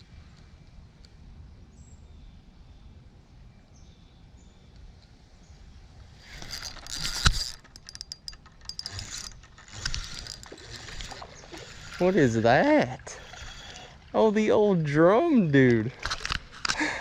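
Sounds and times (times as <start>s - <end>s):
quick clicks: 6.2s - 12.4s.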